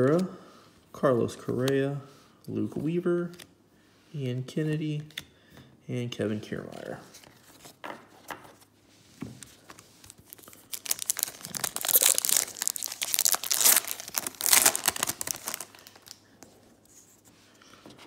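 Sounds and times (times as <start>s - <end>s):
foil wrapper tearing and crinkling: 10.1s - 16.2s.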